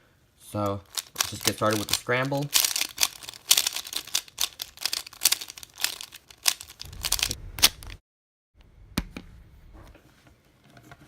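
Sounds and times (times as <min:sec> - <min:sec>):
plastic puzzle cube clicking: 0:00.8 - 0:08.0.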